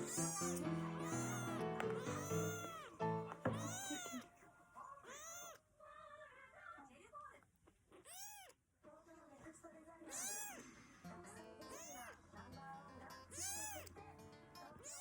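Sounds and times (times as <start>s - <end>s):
background music: 0.0s - 3.9s
kitten mewing: 0.0s - 4.4s, 5.0s - 5.6s, 7.9s - 8.6s, 10.1s - 10.7s, 11.7s - 12.2s, 13.3s - 13.9s, 14.8s - 15.0s.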